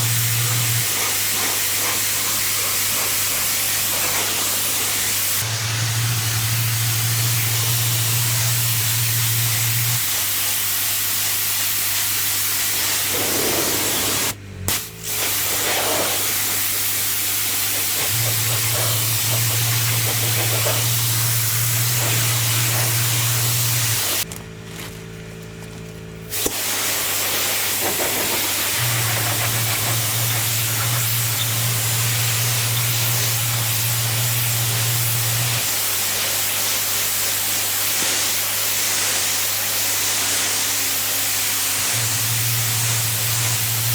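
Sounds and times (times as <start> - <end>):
pressure washer spray hissing: 0.0 - 24.3, 26.3 - 43.9
low machine hum: 28.0 - 35.7, 41.8 - 43.9.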